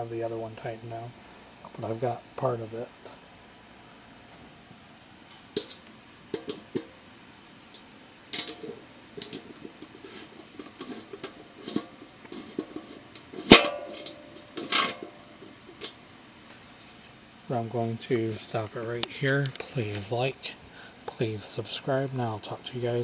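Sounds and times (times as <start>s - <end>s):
metal grill parts knocking and rattling: 5.3s - 7.0s, 8.3s - 16.0s.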